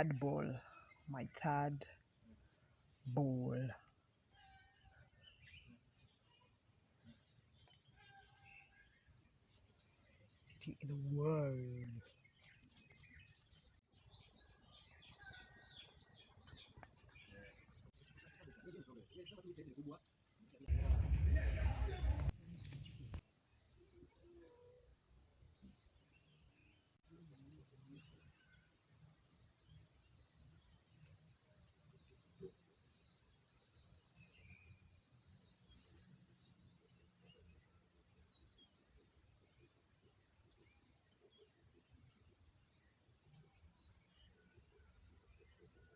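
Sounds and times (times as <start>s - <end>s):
breeze rumbling on microphone: 20.7s - 23.2s.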